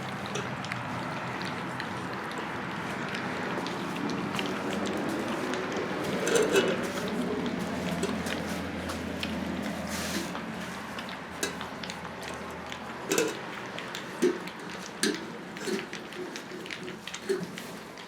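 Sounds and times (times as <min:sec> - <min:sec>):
puppies lapping and licking: 0:00.0 - 0:18.0.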